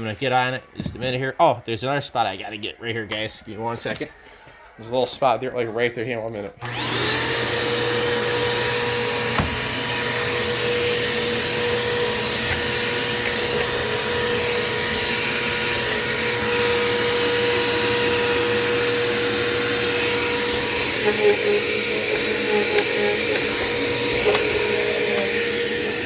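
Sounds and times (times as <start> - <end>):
vacuum cleaner running: 6.6 - 26.0.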